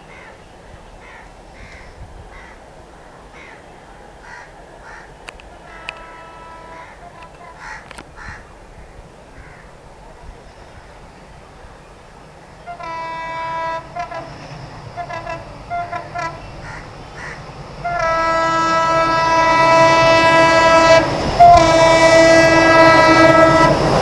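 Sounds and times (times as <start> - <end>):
crows cawing: 4.2 - 5.1, 6.7 - 8.4, 16.6 - 17.4.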